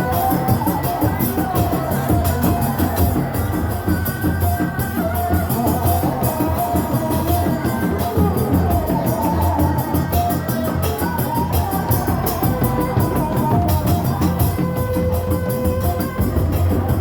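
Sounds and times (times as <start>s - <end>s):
music with drums and melody: 0.0s - 17.0s.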